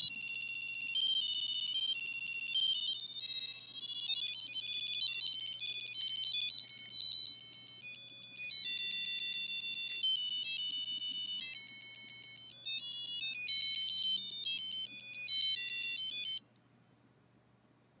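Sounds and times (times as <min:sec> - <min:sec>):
buzzy electronic beeps melody: 0:00.0 - 0:07.1.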